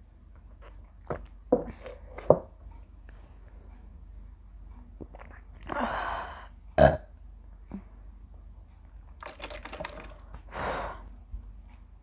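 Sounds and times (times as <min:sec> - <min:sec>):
woman burping: 0:06.8 - 0:07.1
breathy exhales: 0:10.5 - 0:11.1.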